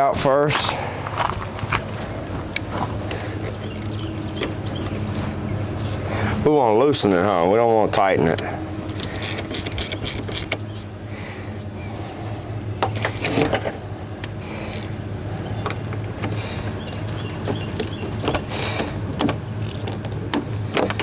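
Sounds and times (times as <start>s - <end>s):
steady low hum: 0.0s - 21.0s
wrench clicks and metal taps: 3.1s - 5.3s, 7.9s - 10.6s, 15.6s - 21.0s.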